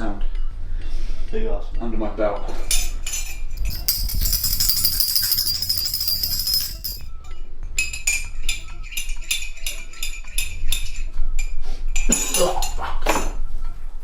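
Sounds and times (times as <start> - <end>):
tambourine-like metallic jingling: 3.6 - 7.1.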